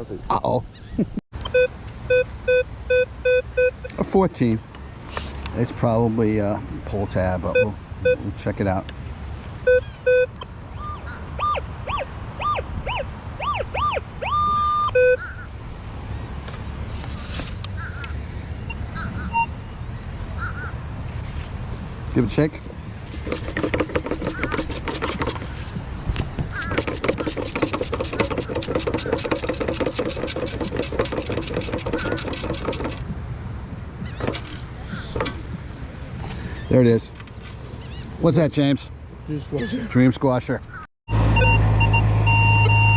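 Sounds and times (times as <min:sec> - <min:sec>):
sand scoop rattling: 0:22.4 - 0:25.7, 0:26.5 - 0:33.0, 0:34.2 - 0:35.4
short lower beep: 0:41.3 - 0:42.9.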